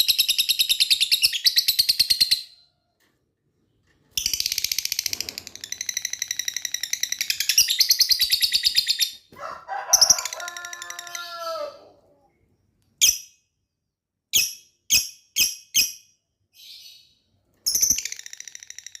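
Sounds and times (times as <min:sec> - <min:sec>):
rooster crowing: 0:09.3 - 0:12.3.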